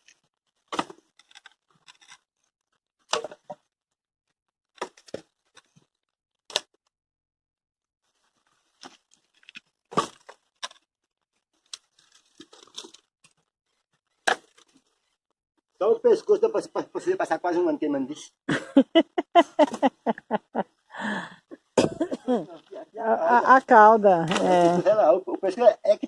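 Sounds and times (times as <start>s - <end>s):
dry wood cracking and crunching: 0.0s - 3.6s, 8.2s - 15.1s, 24.2s - 25.0s.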